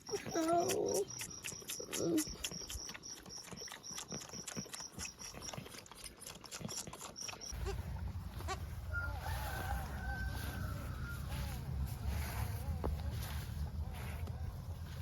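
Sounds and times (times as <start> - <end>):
goat kid bleating: 7.5 - 8.8.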